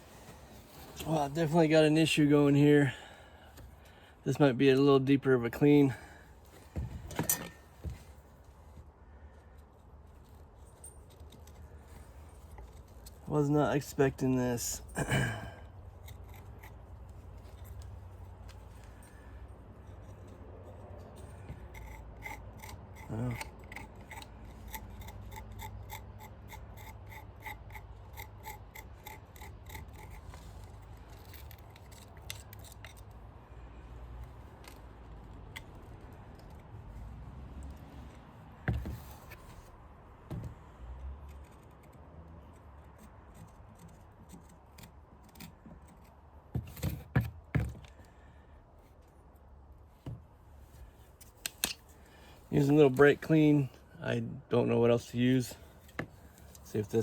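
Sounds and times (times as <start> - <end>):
tools clinking and knocking: 7.0 - 7.7
hand scraping grime: 10.2 - 18.0, 19.8 - 33.1.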